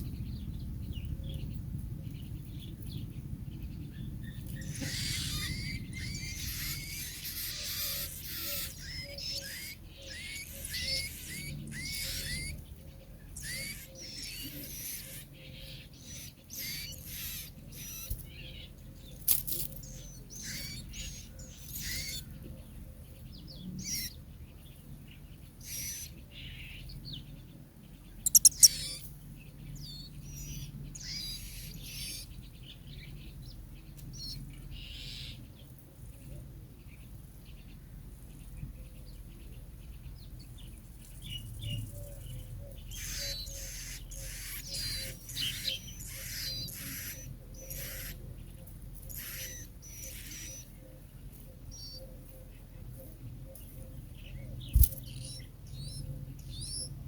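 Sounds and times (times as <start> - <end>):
small bird chirping: 0.0 - 22.4, 23.5 - 24.2, 28.0 - 35.4, 38.4 - 57.0
sharp clicks: 28.3 - 28.7.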